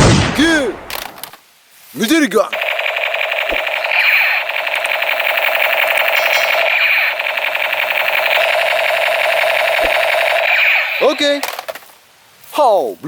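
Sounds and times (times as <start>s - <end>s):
electronic buzzing rattle: 2.5s - 12.0s.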